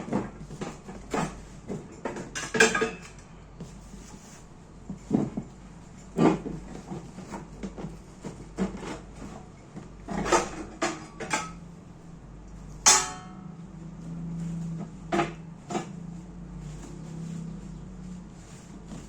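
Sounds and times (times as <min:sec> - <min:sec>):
hard parts clattering: 0:12.9 - 0:13.5.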